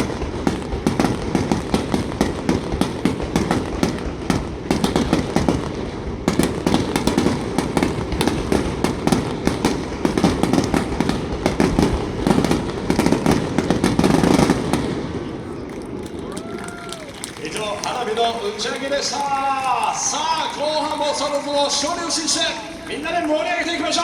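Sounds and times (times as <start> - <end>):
fireworks bangs and crackles: 0.0 - 24.0.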